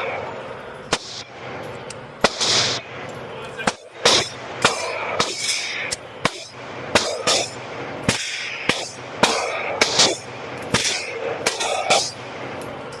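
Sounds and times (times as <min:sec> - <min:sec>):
pistol shots: 0:00.9 - 0:01.6, 0:02.2 - 0:03.0, 0:03.6 - 0:12.5.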